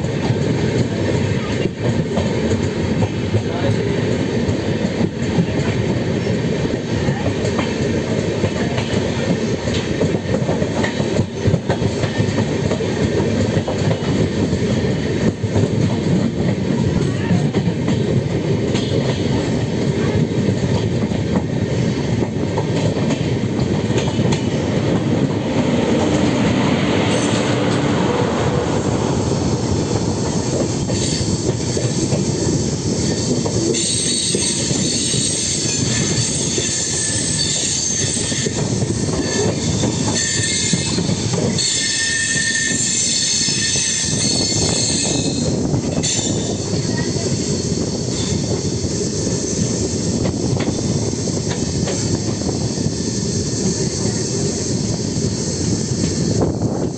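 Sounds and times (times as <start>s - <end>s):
train wheels rumbling on rails: 0.0s - 56.9s
high-pitched wheel squeal: 30.9s - 50.0s.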